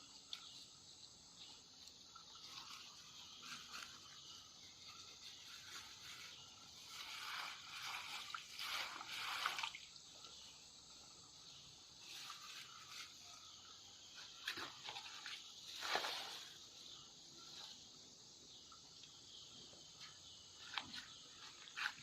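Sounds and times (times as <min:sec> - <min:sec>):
insects chirring: 0:00.0 - 0:22.0.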